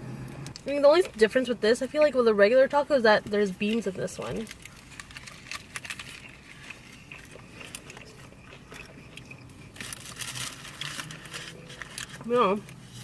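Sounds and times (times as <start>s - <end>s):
crunching and chewing taco: 3.2s - 13.0s.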